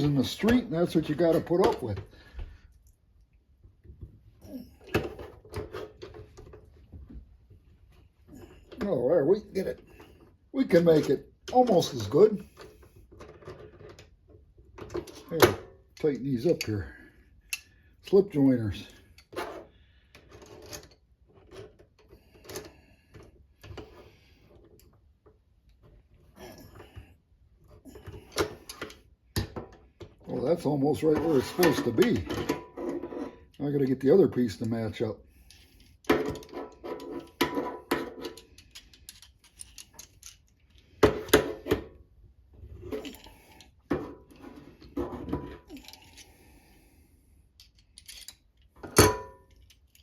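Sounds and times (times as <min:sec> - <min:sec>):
pliers clicking and scraping metal: 0:35.4 - 0:41.4, 0:47.6 - 0:50.0.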